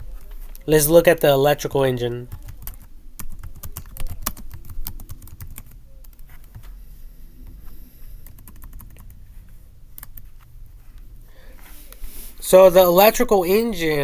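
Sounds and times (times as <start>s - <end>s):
computer keyboard typing: 2.3s - 6.7s, 8.2s - 9.2s, 10.0s - 10.5s.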